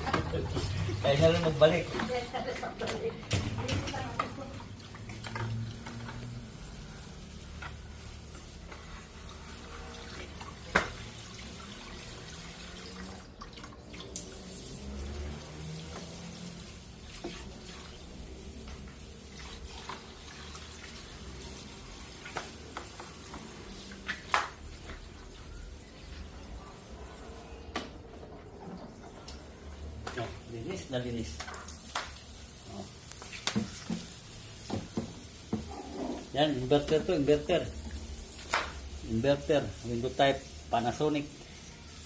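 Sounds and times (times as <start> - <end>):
running water splashing: 0.0 - 27.1.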